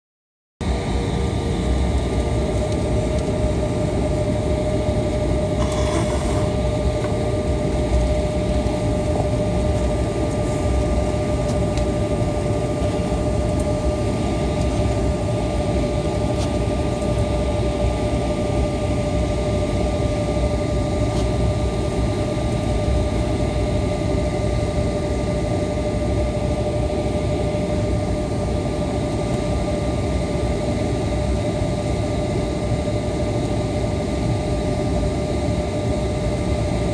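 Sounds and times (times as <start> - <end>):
jet engine low rumble: 0.6 - 36.9
jet engine whine: 0.6 - 36.9.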